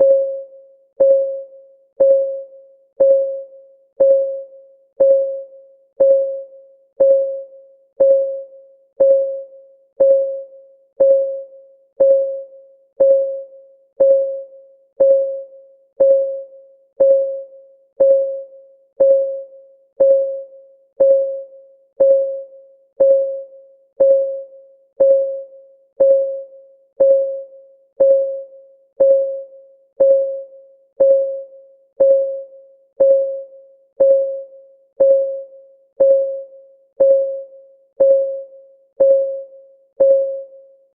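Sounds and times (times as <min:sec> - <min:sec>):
timer ticking: 0:02.0 - 0:02.4, 0:03.0 - 0:03.4, 0:04.0 - 0:04.4, 0:05.0 - 0:05.4, 0:06.0 - 0:06.4, 0:07.0 - 0:07.4, 0:08.0 - 0:08.4, 0:09.0 - 0:09.4, 0:10.0 - 0:10.4, 0:11.0 - 0:11.4, 0:12.0 - 0:12.4, 0:13.0 - 0:13.4, 0:14.0 - 0:14.4, 0:15.0 - 0:15.4, 0:16.0 - 0:16.4, 0:17.0 - 0:17.4, 0:18.0 - 0:18.4, 0:19.0 - 0:19.4, 0:20.0 - 0:20.4, 0:21.0 - 0:21.4, 0:22.0 - 0:22.4, 0:23.0 - 0:23.4, 0:24.0 - 0:24.4, 0:25.0 - 0:25.4, 0:26.0 - 0:26.4, 0:27.0 - 0:27.4, 0:28.0 - 0:28.4, 0:29.0 - 0:29.4, 0:30.0 - 0:30.4, 0:31.0 - 0:31.4, 0:32.0 - 0:32.4, 0:33.0 - 0:33.4, 0:34.0 - 0:34.4, 0:35.0 - 0:35.4, 0:36.0 - 0:36.4, 0:37.0 - 0:37.4, 0:38.0 - 0:38.4, 0:39.0 - 0:39.4, 0:40.0 - 0:40.4.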